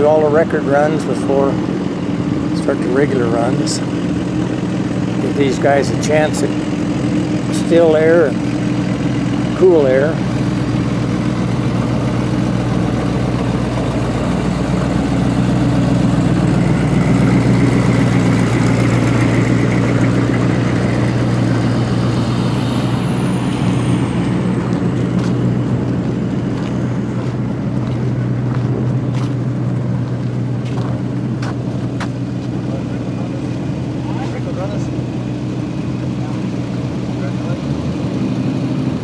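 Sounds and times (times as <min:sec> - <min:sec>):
vehicle engine running: 0:00.0 - 0:39.0
high whine sliding down: 0:15.8 - 0:27.2.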